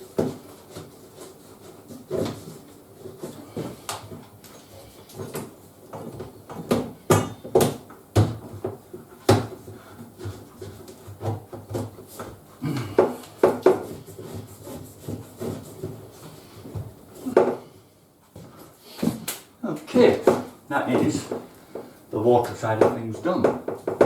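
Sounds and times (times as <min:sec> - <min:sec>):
tools knocking on pipe fittings: 0:22.6 - 0:24.0.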